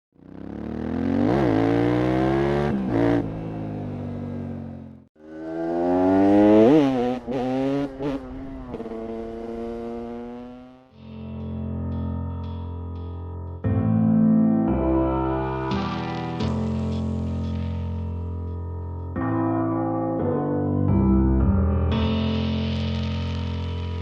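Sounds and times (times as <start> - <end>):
motorcycle engine revving: 0.2 - 10.9.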